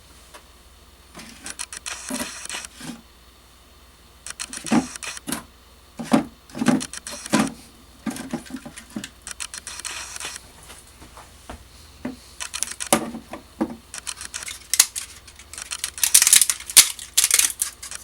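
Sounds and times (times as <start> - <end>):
plastic breaking with scratchy crackling: 14.0 - 18.0.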